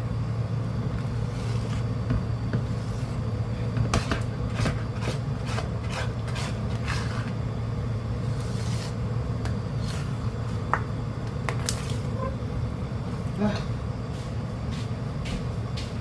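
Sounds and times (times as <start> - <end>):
steady low hum: 0.0 - 16.0
spatula scraping sticky mixture: 3.9 - 7.4.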